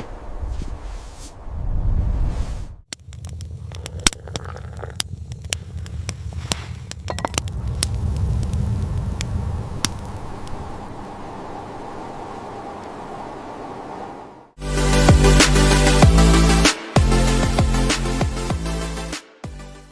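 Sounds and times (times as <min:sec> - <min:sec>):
wind rumble: 0:00.0 - 0:14.6
fire crackling and popping: 0:02.8 - 0:13.6.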